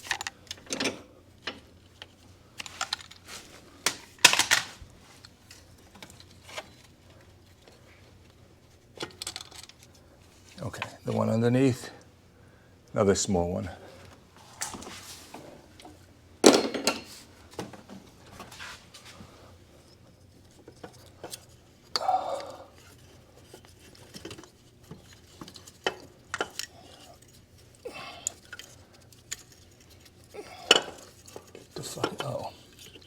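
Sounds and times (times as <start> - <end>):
metal tools clinking on metal: 27.9 - 33.0.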